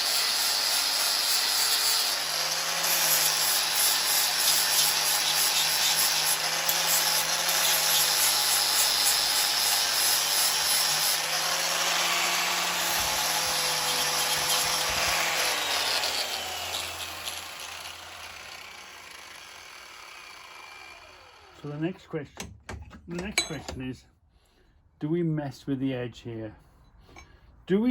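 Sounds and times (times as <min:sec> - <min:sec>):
power tool grinding steel: 0:00.0 - 0:22.0.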